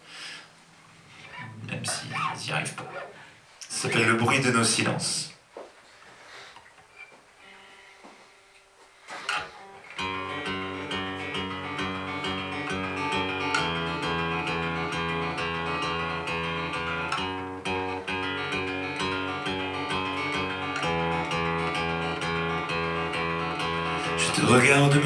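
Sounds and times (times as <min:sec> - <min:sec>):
acoustic guitar strumming chords: 0:07.4 - 0:25.0.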